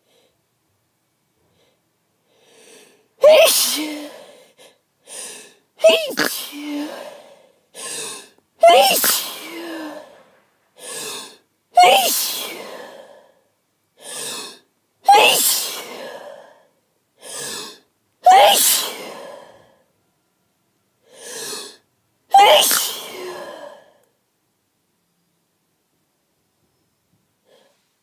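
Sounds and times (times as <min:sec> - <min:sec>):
woman sneezing: 0:03.2 - 0:04.3, 0:05.8 - 0:07.1, 0:08.6 - 0:10.2, 0:11.8 - 0:12.8, 0:15.1 - 0:16.1, 0:18.2 - 0:19.2, 0:22.3 - 0:23.8.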